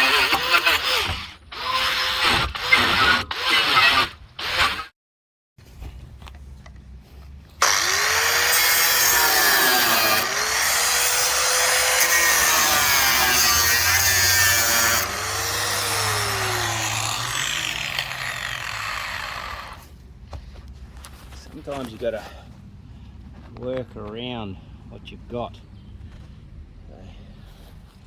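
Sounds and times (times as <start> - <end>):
angle grinder cutting metal: 0.0 - 1.0, 7.6 - 19.8.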